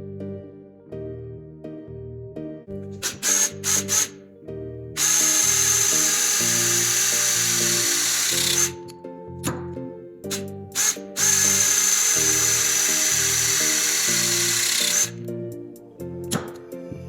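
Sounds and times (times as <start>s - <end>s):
background music: 0.0s - 17.0s
power tool motor whining: 3.0s - 4.2s, 5.0s - 9.0s, 10.3s - 15.3s.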